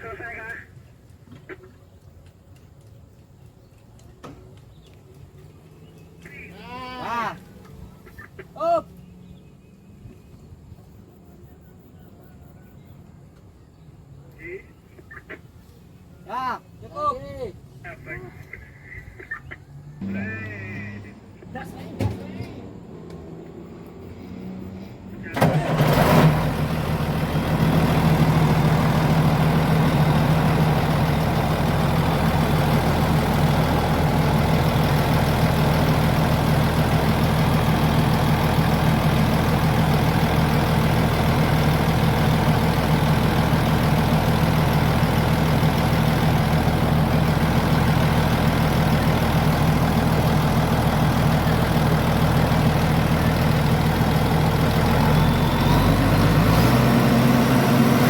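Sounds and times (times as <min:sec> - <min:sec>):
bulldozer diesel engine idling: 0:25.2 - 0:58.0.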